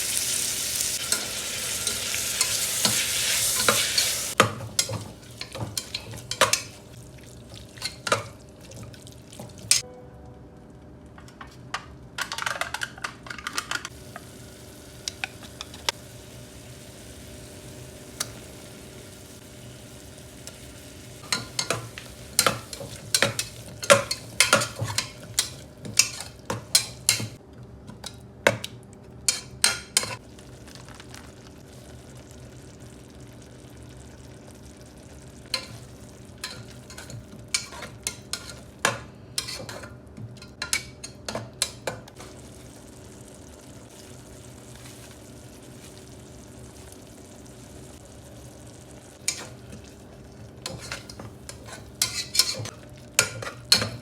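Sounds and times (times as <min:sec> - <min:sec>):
food sizzling in a pan: 0:00.0 - 0:09.8, 0:13.9 - 0:27.4, 0:29.3 - 0:54.0
spatula scraping a pan: 0:36.4 - 0:38.8, 0:39.4 - 0:41.8, 0:50.6 - 0:54.0.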